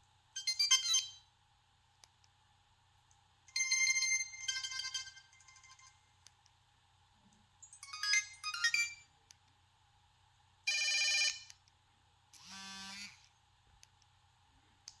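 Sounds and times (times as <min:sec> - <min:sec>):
buzzy phone tone: 0:12.4 - 0:13.2.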